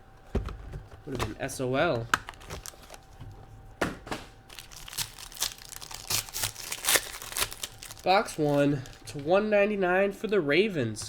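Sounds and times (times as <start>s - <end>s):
packaging crinkling and tearing: 1.1s - 3.2s, 4.5s - 9.2s.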